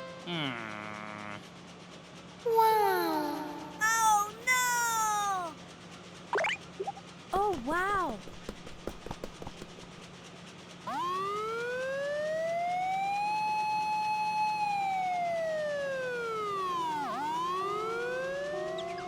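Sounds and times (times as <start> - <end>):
emergency vehicle siren wailing: 10.9 - 19.0.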